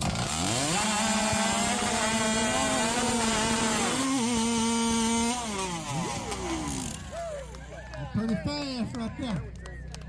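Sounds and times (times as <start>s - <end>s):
chainsaw cutting through log: 0.0s - 7.3s.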